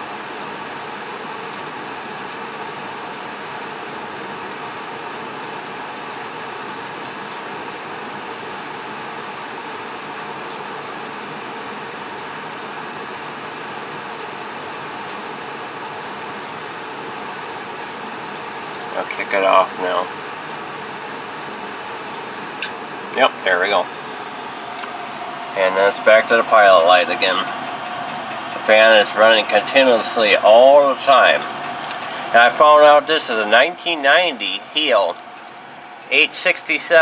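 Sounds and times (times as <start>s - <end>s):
furnace rushing noise: 22.7s - 36.6s.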